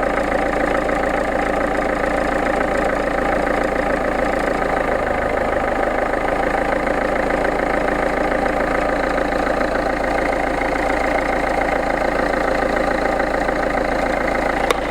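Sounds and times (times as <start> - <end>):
diesel engine idling: 0.0 - 14.9.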